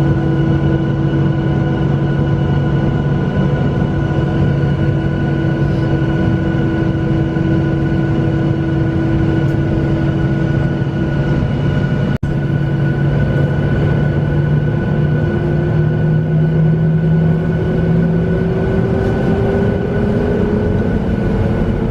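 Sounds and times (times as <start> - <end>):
jet engines heard from cabin: 0.0 - 21.9.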